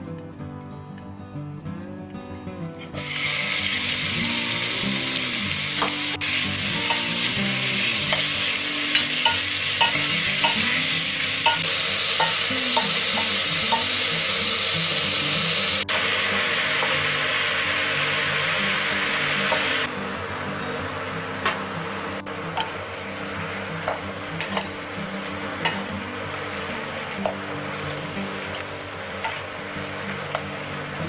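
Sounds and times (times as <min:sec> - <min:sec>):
food sizzling in hot oil: 0:03.0 - 0:31.0
utensil tapping pan: 0:05.8 - 0:07.3, 0:08.0 - 0:14.8, 0:28.5 - 0:29.5.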